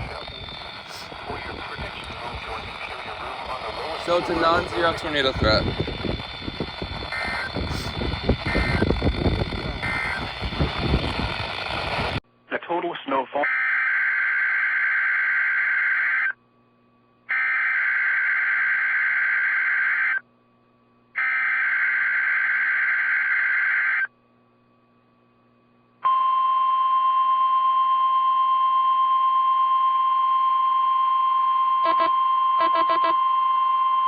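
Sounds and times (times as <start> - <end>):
steady warning alarm tone: 0.0 - 12.2, 26.1 - 34.0
warbling digital data bursts: 0.0 - 12.2.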